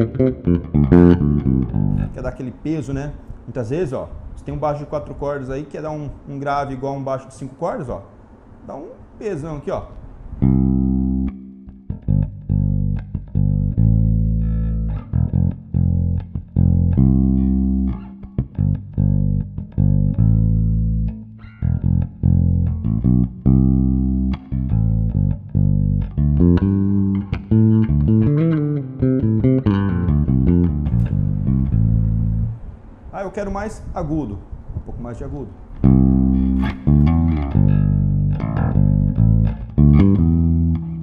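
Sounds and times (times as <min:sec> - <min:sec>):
electric bass notes with slides: 0:00.0 - 0:03.5, 0:10.3 - 0:33.1, 0:35.7 - 0:41.0.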